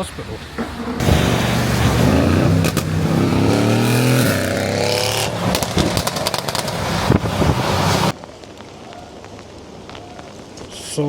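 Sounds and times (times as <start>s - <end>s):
exhaust pops and crackles: 0.0s - 11.0s
car engine revving hard: 0.6s - 8.1s.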